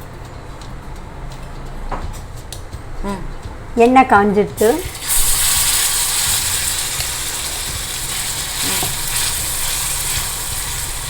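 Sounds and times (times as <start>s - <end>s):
batter sizzling in hot oil: 4.6s - 11.0s.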